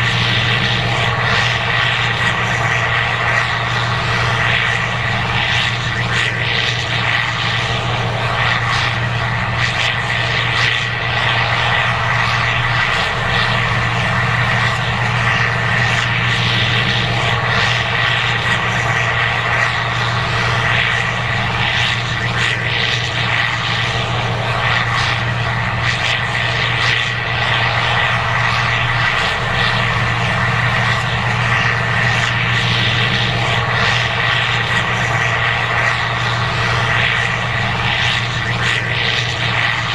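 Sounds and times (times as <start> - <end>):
combine harvester diesel drone: 0.0 - 39.9.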